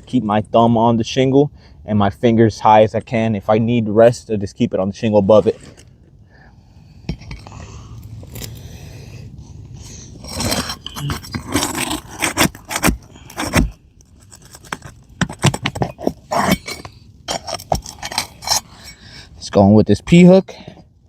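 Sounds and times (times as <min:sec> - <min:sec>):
metal tool scraping shingles: 0:10.0 - 0:19.1.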